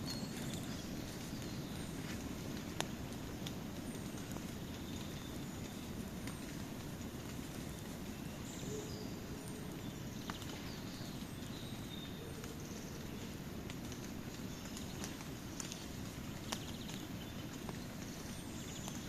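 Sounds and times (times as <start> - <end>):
bird chirps: 0.0 - 2.2
campfire crackling and popping: 0.0 - 19.0.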